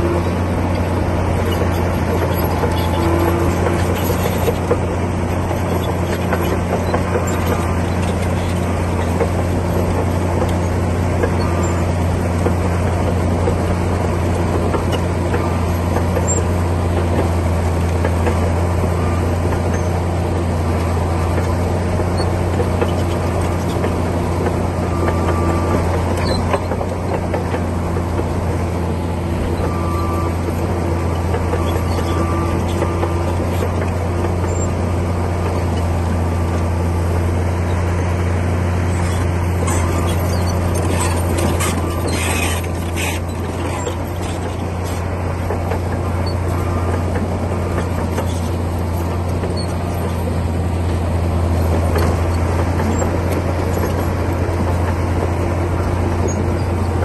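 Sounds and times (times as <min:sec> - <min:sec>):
bulldozer diesel engine droning: 0:00.0 - 0:57.0.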